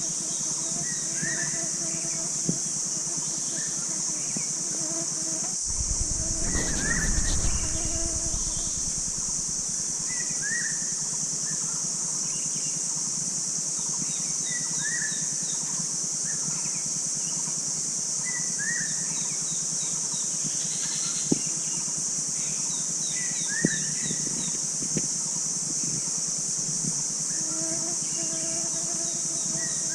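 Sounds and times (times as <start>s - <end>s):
low rumble: 5.6s - 10.3s.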